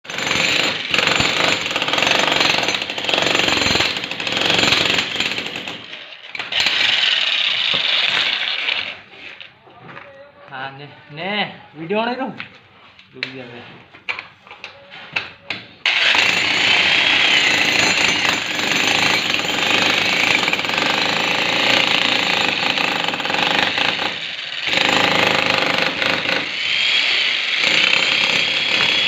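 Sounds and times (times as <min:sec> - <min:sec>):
power tool whining: 0:22.7 - 0:29.0.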